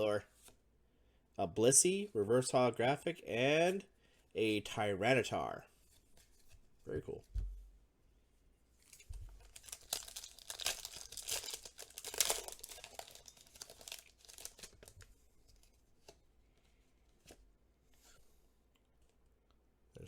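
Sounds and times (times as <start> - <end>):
foil wrapper tearing and crinkling: 9.4 - 15.0.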